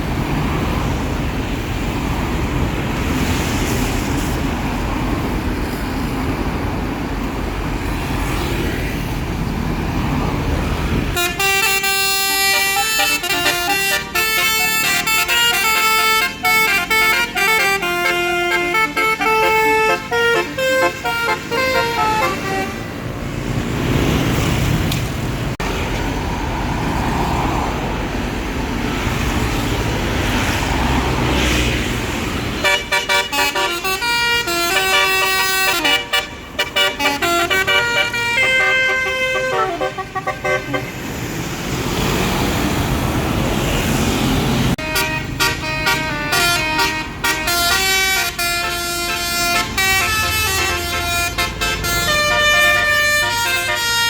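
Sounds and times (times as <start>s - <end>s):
passing traffic noise: 0.0s - 54.0s
multi-tone bus horn melody: 11.0s - 23.4s, 32.3s - 41.0s, 44.6s - 54.0s.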